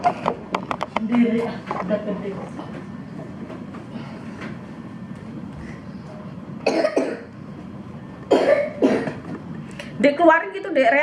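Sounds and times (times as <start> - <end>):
girl coughing: 6.6 - 7.3, 8.3 - 9.2.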